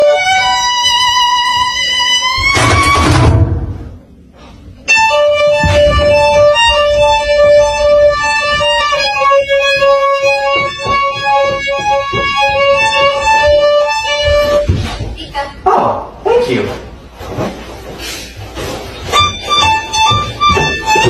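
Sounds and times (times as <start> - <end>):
instrumental melody of held notes: 0.0 - 3.0, 4.9 - 14.7, 19.1 - 21.0.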